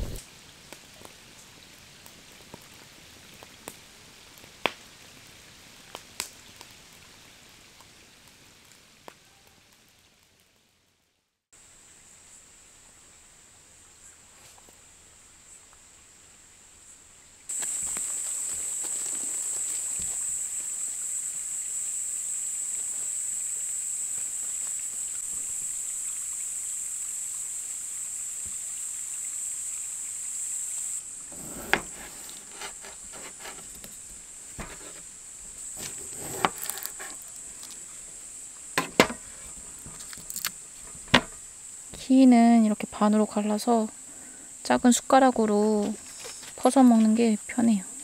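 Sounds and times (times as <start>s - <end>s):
insects chirring: 13.4s - 48.0s
sharp clicks and knocks: 38.8s - 41.4s.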